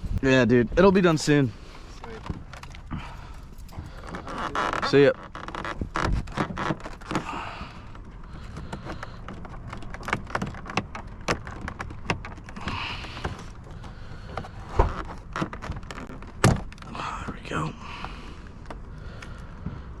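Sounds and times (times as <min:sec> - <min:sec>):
plastic car trim clicking: 0:07.9 - 0:16.9.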